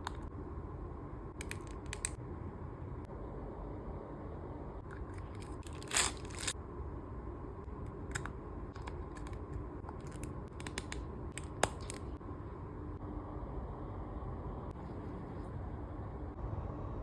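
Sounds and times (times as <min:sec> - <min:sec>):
packaging tearing rustle: 0:05.4 - 0:06.6.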